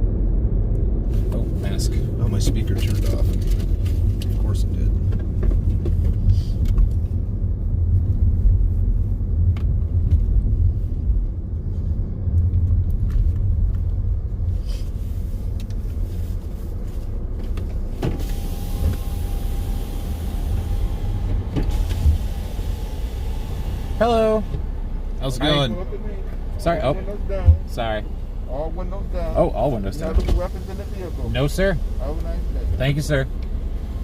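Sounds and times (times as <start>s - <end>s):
car rumble from inside cabin: 0.0s - 34.0s
hiss: 18.0s - 24.5s.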